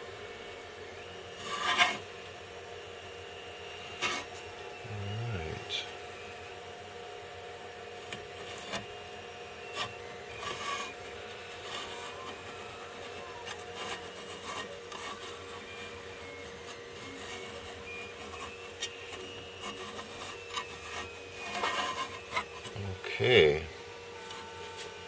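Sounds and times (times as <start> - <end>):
low mechanical hum: 0.0 - 25.0
plastic scraping against tool: 9.6 - 22.8.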